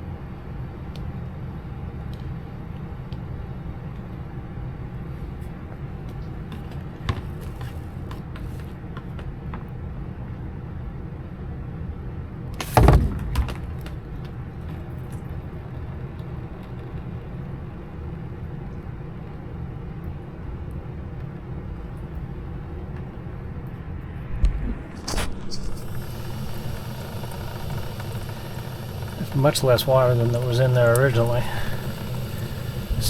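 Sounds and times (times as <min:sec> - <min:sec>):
low machine hum: 0:09.7 - 0:33.0
loud knock: 0:12.6 - 0:14.0.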